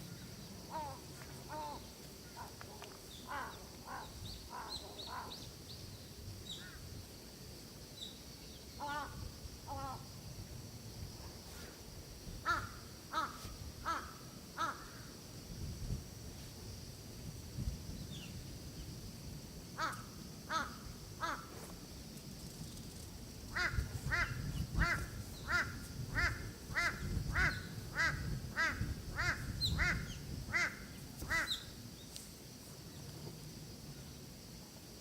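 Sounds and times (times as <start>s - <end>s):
crow cawing: 3.3s - 5.3s, 12.5s - 15.0s, 19.8s - 21.5s.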